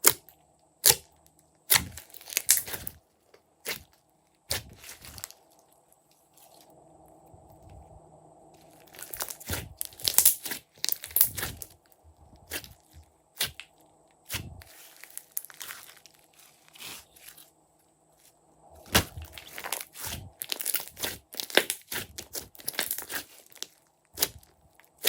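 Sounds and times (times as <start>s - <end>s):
sticky pops and crackles: 1.7s - 3.0s, 9.0s - 11.7s, 18.9s - 25.0s
slime squished by hand: 8.9s - 11.7s, 12.5s - 12.8s, 18.8s - 25.0s.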